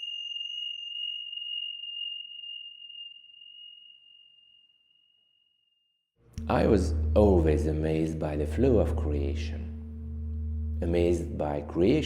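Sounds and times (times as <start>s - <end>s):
struck metal chime ringing: 6.4s - 12.0s.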